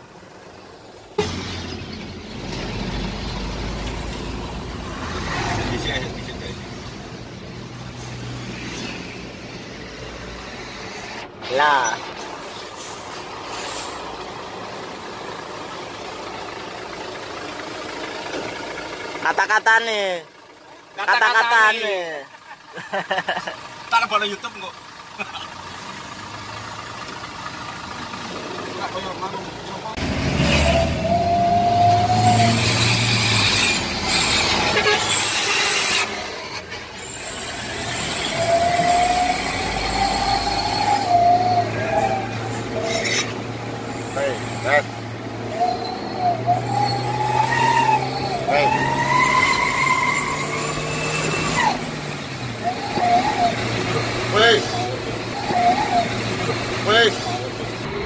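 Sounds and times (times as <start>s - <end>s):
van road and engine noise: 0.0s - 58.0s
vehicle horn blasts: 34.7s - 35.2s.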